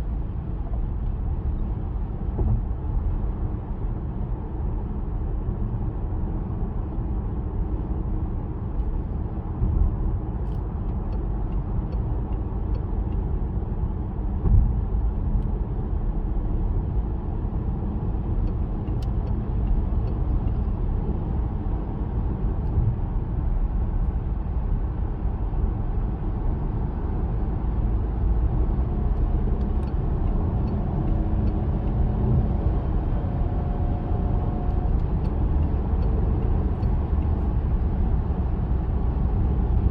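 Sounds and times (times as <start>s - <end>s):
car cabin road rumble: 0.0s - 39.9s.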